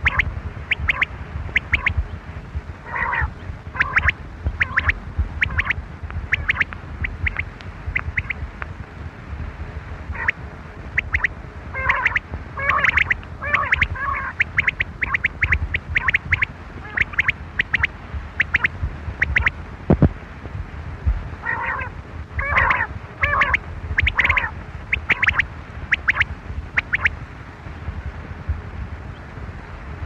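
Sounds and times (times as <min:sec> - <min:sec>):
quail chirping calls: 0:00.0 - 0:02.1, 0:02.8 - 0:08.4, 0:10.1 - 0:10.4, 0:11.0 - 0:19.5, 0:21.4 - 0:27.1
steady low rumble: 0:00.0 - 0:30.0.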